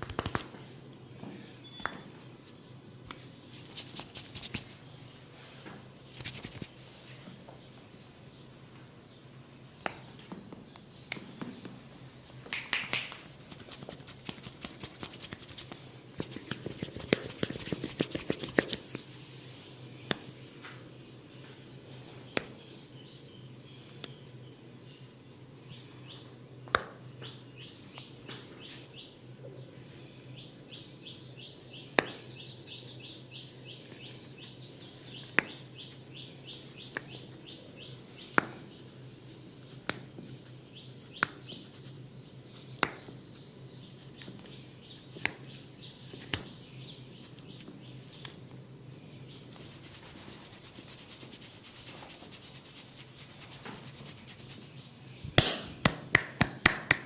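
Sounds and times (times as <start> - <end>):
hands scratching hair on scalp: 3.1 - 4.8, 6.1 - 7.1, 12.5 - 20.4, 49.3 - 54.8
sharp snap: 55.4 - 57.0.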